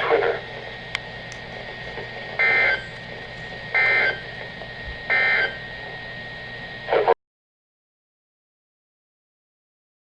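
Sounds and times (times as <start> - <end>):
radio hiss: 0.0 - 7.2
buzzing data tone bursts: 2.4 - 4.3, 5.1 - 5.7.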